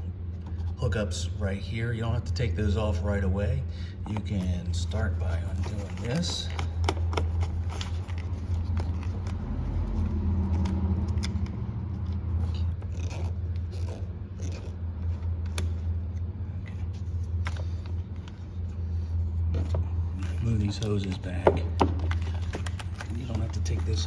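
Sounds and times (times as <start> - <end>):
low hum: 0.0 - 24.0.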